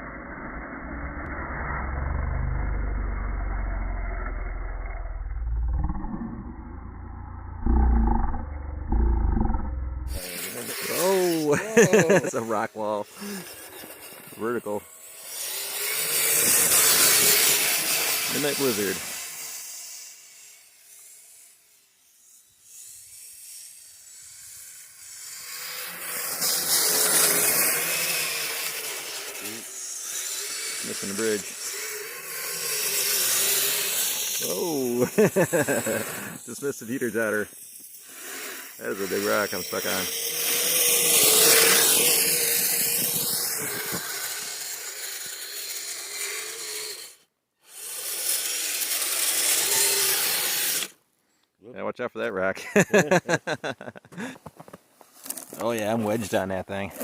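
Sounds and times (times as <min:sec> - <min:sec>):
electric motor whine: 0:00.1 - 0:51.0
rushing hiss through snow: 0:10.1 - 0:14.5, 0:34.4 - 0:40.1.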